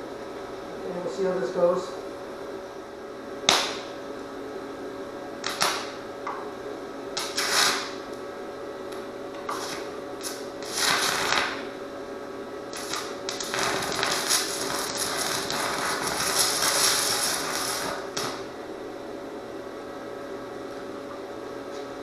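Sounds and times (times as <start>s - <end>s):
steady electrical hum: 0.0s - 22.0s
welding arc crackling and hissing: 5.4s - 6.0s, 7.2s - 8.0s, 9.5s - 11.7s, 12.7s - 18.5s.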